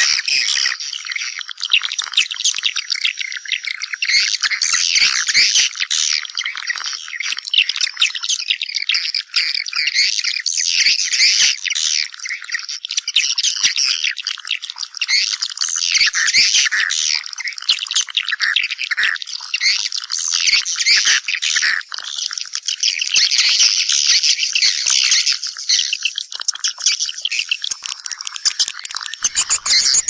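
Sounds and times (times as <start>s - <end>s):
swiftlets chirping: 28.4s - 30.0s.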